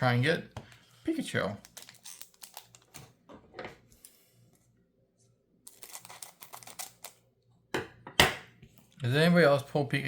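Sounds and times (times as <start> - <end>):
foil and cards crinkling: 1.6 - 3.0, 5.7 - 7.1.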